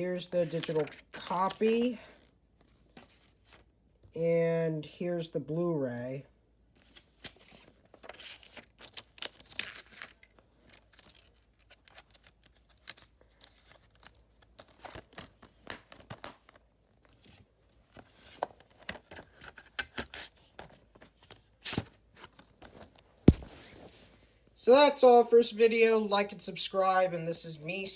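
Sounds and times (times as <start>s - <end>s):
paper packaging crinkling: 6.8s - 24.2s.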